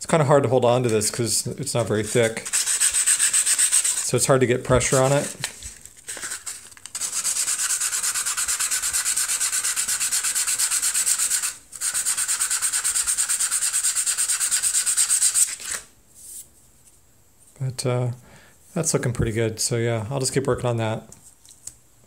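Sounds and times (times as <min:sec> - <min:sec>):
sandpaper rubbing on plywood: 0:01.8 - 0:05.4, 0:06.2 - 0:15.8.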